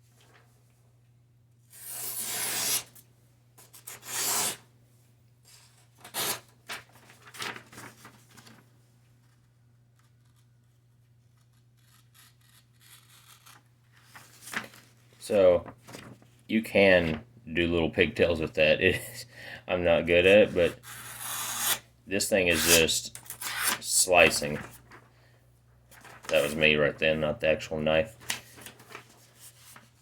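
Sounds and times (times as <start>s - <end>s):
blade slicing paper: 1.7s - 3.0s, 3.8s - 4.6s, 6.0s - 6.5s, 20.8s - 21.8s, 22.5s - 24.5s.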